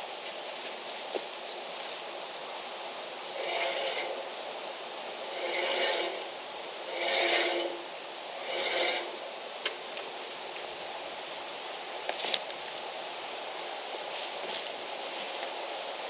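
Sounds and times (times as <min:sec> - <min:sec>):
scraping strokes with squeak: 0:03.3 - 0:04.4, 0:05.3 - 0:09.3.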